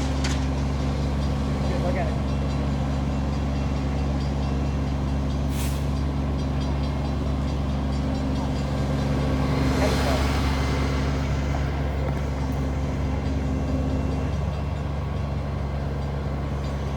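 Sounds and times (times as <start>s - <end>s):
large diesel engine idling: 0.0s - 16.9s.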